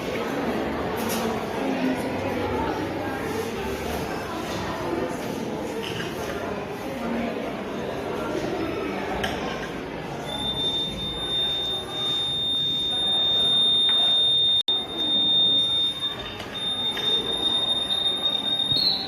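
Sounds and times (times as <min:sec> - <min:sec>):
high-pitched alarm buzzer tone: 0:10.3 - 0:19.0.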